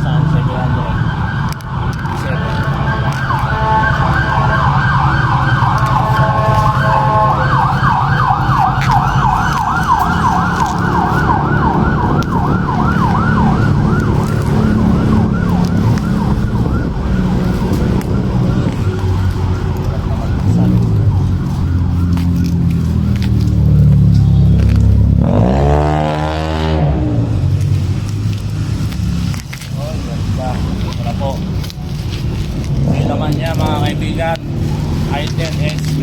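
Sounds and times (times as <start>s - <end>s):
low engine rumble: 0.0s - 25.6s
emergency vehicle siren: 0.0s - 36.0s.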